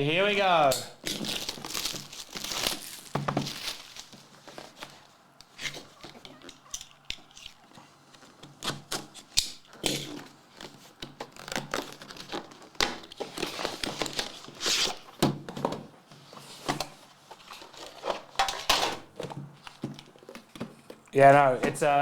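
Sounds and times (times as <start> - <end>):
plastic wrapping crinkling and tearing: 0.2 - 15.2
cardboard clicks and knocks: 1.0 - 5.0, 19.1 - 22.0.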